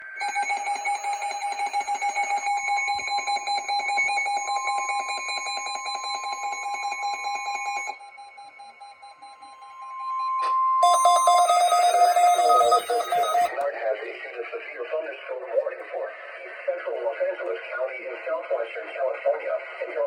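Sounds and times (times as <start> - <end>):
rapid electronic alarm beep: 0.0 - 13.6
steady warning alarm tone: 0.0 - 13.7.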